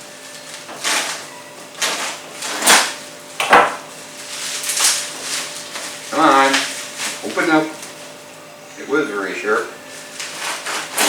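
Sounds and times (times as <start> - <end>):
serrated blade sawing through plastic: 10.3 - 11.0.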